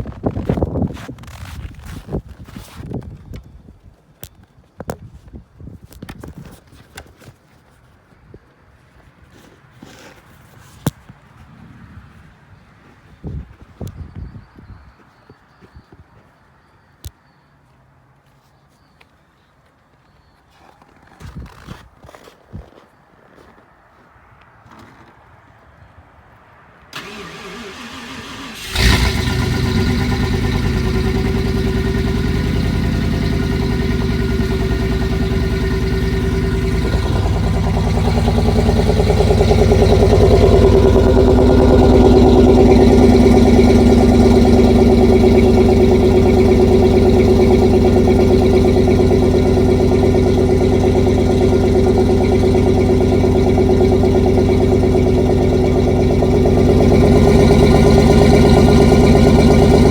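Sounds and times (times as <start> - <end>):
car engine fast idle: 27.0 - 59.9
starter motor cranking: 27.0 - 59.9.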